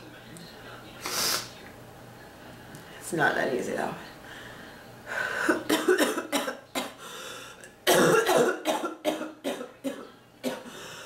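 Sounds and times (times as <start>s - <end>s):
person coughing harshly: 5.5s - 7.0s, 7.9s - 10.8s.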